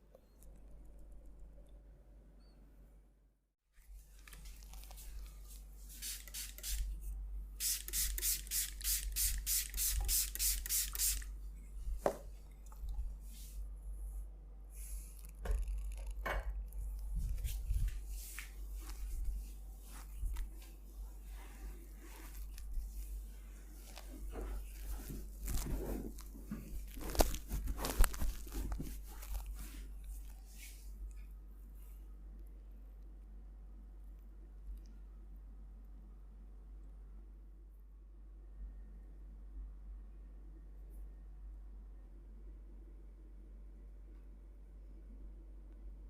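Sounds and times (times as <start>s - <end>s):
quick hissing squirts: 7.6s - 11.2s
hands rubbing skin and hair: 17.2s - 31.0s.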